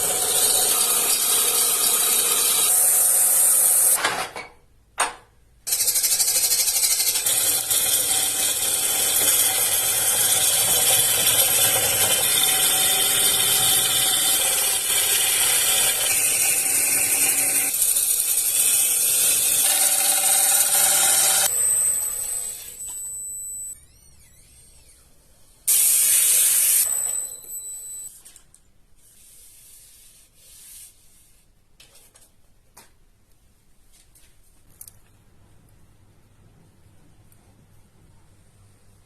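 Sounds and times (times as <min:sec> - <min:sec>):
wood lathe turning hiss: 0:07.1 - 0:21.5.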